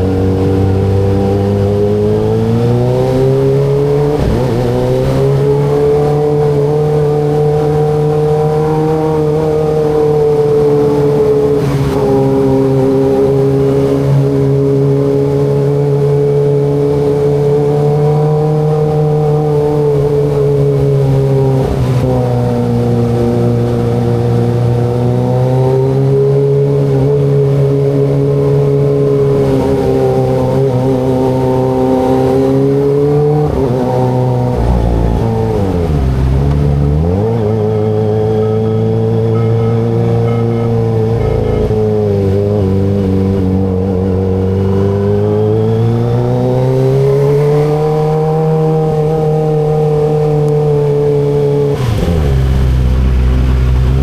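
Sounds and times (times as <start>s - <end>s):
motorcycle engine running: 34.9s - 45.9s.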